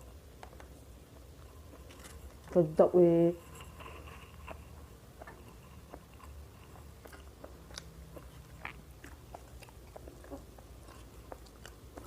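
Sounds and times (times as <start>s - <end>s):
soft chewing: 0.0s - 12.0s
mouth clicks and smacks: 4.4s - 12.0s.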